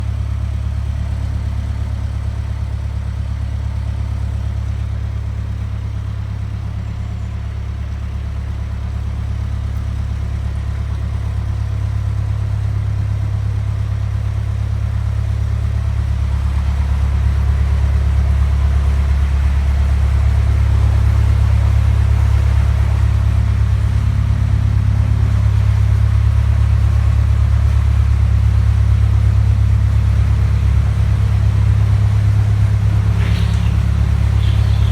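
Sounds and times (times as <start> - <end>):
boat diesel engine running: 0.0 - 34.9.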